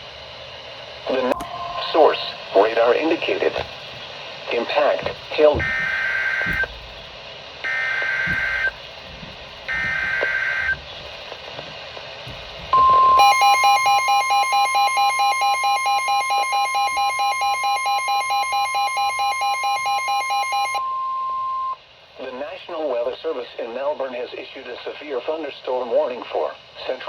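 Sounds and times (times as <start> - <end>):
steady warning tone: 1.1 - 11.6, 12.3 - 21.8
shrill electronic alarm beeping: 1.3 - 3.8, 5.5 - 6.7, 7.7 - 8.8, 9.7 - 10.8, 12.7 - 21.8.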